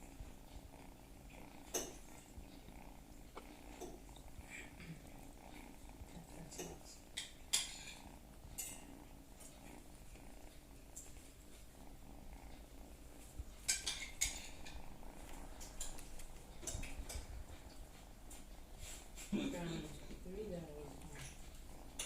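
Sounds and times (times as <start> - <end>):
kitten purring: 0.0 - 22.0
scratchy rustles in a basket: 15.0 - 21.9.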